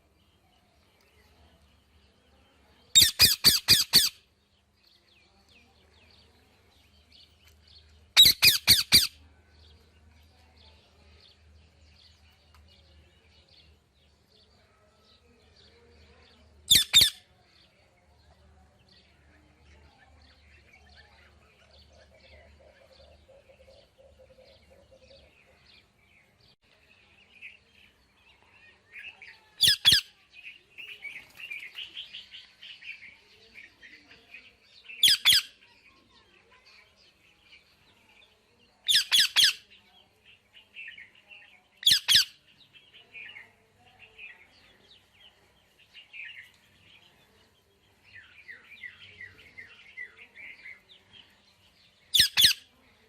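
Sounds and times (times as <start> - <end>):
parrot chirping and chattering: 3.0 - 4.2, 8.2 - 9.2, 16.7 - 17.2, 29.6 - 30.0, 35.0 - 35.5, 38.8 - 39.6, 41.8 - 42.4, 52.1 - 52.7
parrot squawking: 8.2 - 9.1.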